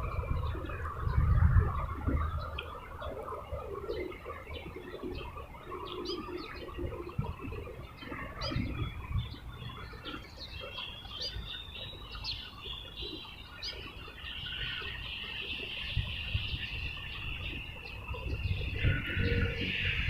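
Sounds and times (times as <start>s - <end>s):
birds chirping: 0.0s - 20.0s
high-pitched drone: 13.9s - 20.0s.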